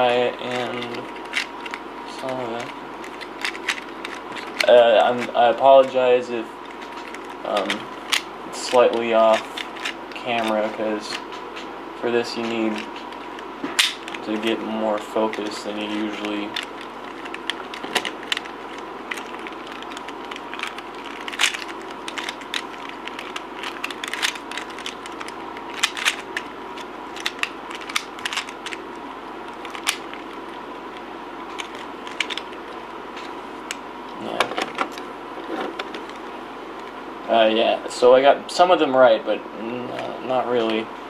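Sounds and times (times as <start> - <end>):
puzzle cube plastic clicks: 0.4 - 5.3, 12.4 - 28.8, 29.5 - 30.3, 31.5 - 32.6.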